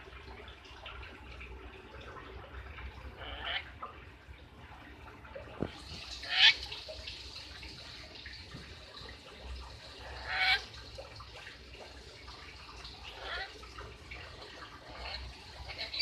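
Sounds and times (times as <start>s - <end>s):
parrot harsh calls: 3.2s - 3.7s, 6.2s - 6.6s, 10.0s - 10.7s, 13.1s - 13.5s.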